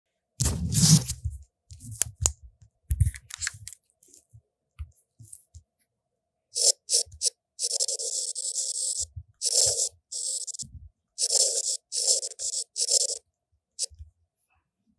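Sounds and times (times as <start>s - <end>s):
stylus scribbling: 0.4s - 1.2s, 6.6s - 10.6s, 11.2s - 13.2s.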